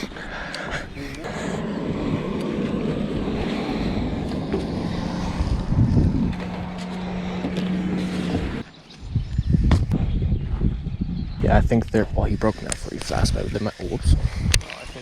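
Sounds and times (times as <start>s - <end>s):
motor engine running: 1.2s - 8.6s.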